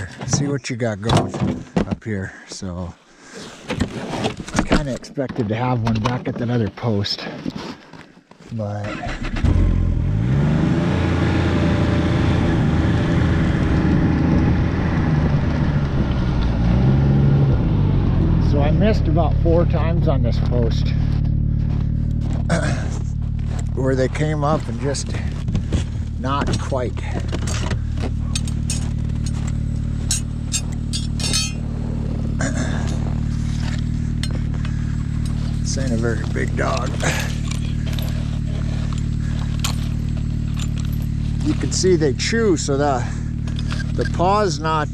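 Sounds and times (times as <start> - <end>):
snowmobile engine accelerating: 9.1 - 44.9
sharp clicks and clinks: 28.3 - 31.6.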